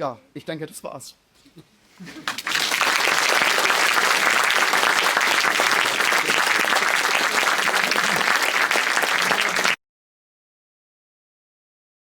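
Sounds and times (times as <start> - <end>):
audience applauding: 2.1 - 9.8.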